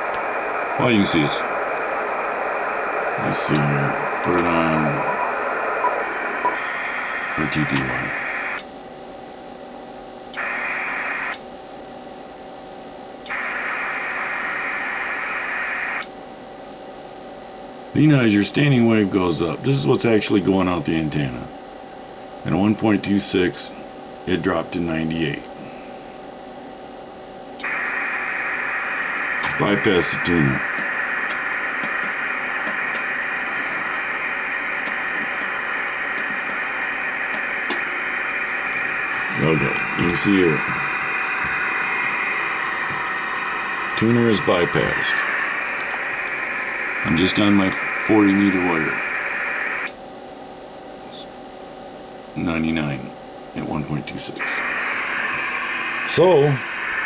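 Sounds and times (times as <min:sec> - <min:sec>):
faint steady tone: 0:00.0 - 0:08.6, 0:13.3 - 0:16.0, 0:27.6 - 0:50.0
radio receiver hiss: 0:00.0 - 0:08.7, 0:10.3 - 0:11.5, 0:13.3 - 0:16.2, 0:27.6 - 0:50.0, 0:52.4 - 0:57.0.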